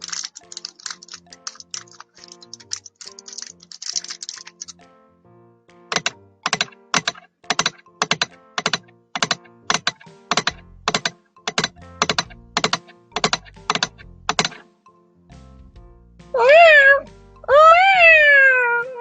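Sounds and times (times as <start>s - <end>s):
keyboard key clicks: 0.0s - 4.8s, 5.9s - 14.6s
soft background music: 0.0s - 19.0s.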